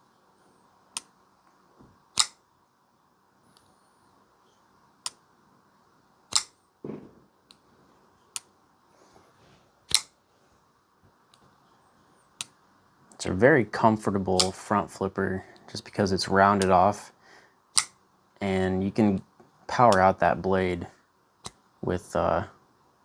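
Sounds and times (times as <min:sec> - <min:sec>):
knife blade snapping open: 0:02.2 - 0:02.4, 0:06.3 - 0:06.5, 0:09.9 - 0:10.1
knife closing clicks: 0:02.2 - 0:02.4, 0:06.3 - 0:06.6, 0:09.9 - 0:10.1, 0:17.8 - 0:18.0.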